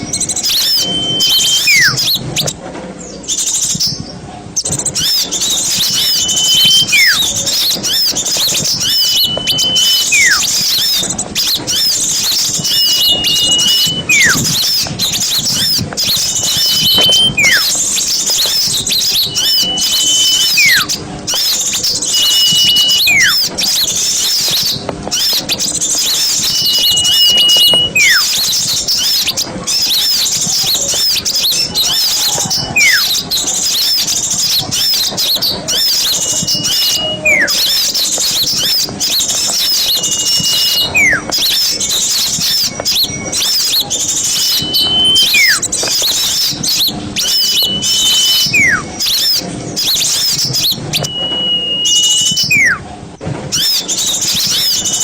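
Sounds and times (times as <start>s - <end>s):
clear held whistle: 0.0s - 2.6s, 4.6s - 55.0s
small birds chirping and twittering: 0.0s - 55.0s
long falling whistle: 0.4s - 2.2s, 5.7s - 7.3s, 8.6s - 10.6s, 12.4s - 14.9s, 16.1s - 17.8s, 18.8s - 21.0s, 22.0s - 23.5s, 26.2s - 28.4s, 32.5s - 33.2s, 35.7s - 37.9s, 39.8s - 41.2s, 44.3s - 45.6s, 46.8s - 48.9s, 50.6s - 52.8s.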